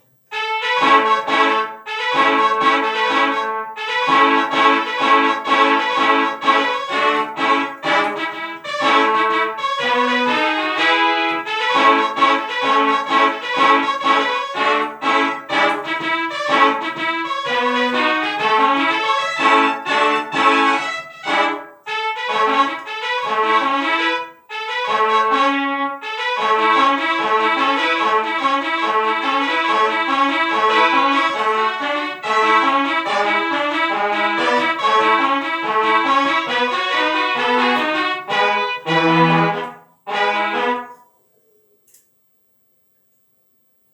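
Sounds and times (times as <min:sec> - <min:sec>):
instrumental music with trumpet melody: 0:00.3 - 0:41.1.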